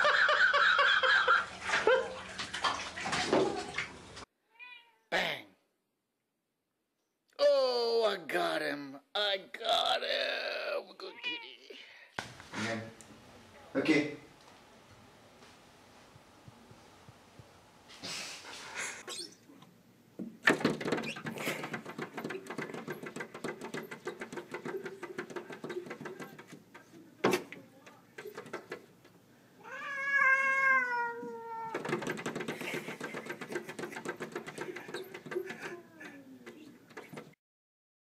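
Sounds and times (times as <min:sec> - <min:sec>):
cat meowing: 0:04.5 - 0:05.1, 0:29.6 - 0:31.8.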